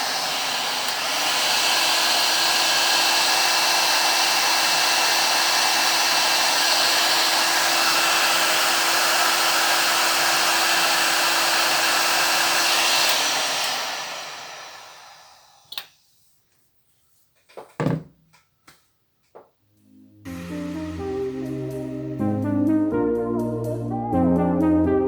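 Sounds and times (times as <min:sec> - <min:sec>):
hot air gun blowing: 0:00.0 - 0:15.8.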